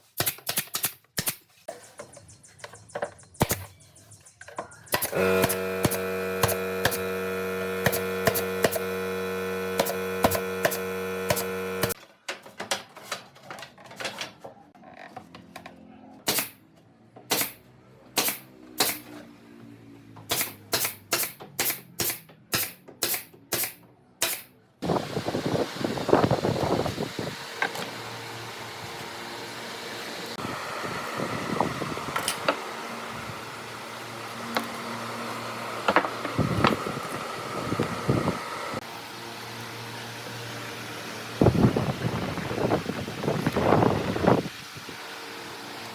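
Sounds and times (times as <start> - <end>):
power tool motor running: 5.0 - 12.0, 24.8 - 45.9
tool rough noise: 5.0 - 12.0.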